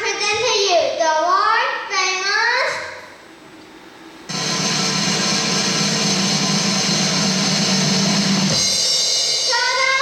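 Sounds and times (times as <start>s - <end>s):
music with drums and guitar: 4.3s - 10.0s.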